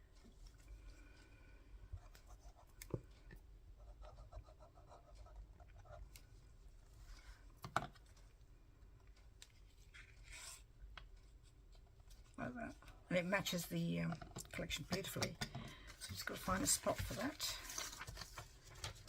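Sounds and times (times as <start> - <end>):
paper rustling and scratching: 16.0 - 19.0.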